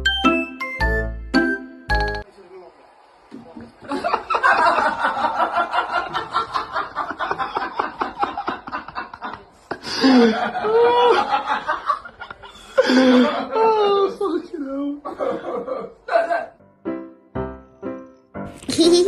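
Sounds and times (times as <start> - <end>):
person laughing: 7.3 - 11.4.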